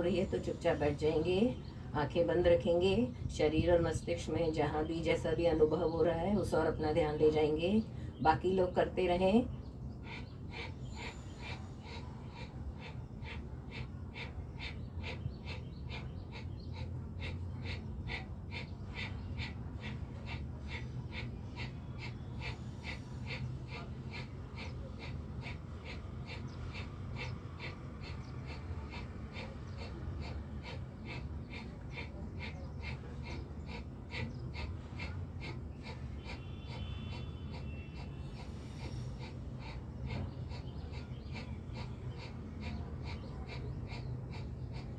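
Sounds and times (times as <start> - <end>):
rapid forceful breathing: 0.0 - 44.9.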